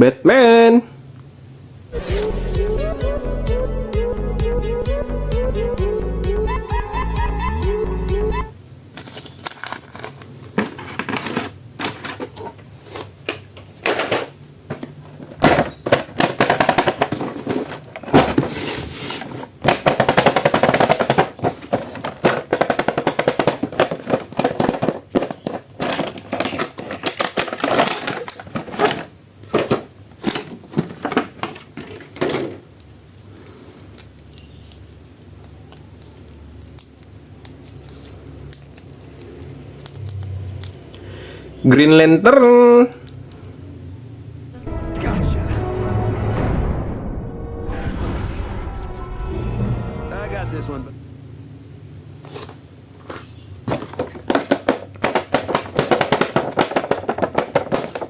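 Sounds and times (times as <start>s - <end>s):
plastic packaging crinkling: 8.9s - 32.8s, 52.2s - 58.0s.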